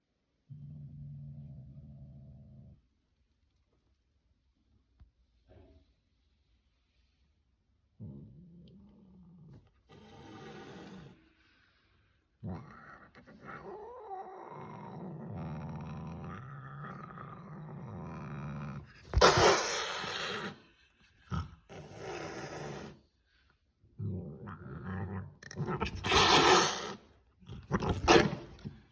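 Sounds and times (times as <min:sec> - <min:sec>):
cat growling low: 0:00.4 - 0:02.9, 0:07.8 - 0:11.6, 0:12.2 - 0:23.0, 0:23.9 - 0:28.9
cat hissing: 0:09.9 - 0:11.4, 0:18.8 - 0:23.0, 0:25.1 - 0:28.7.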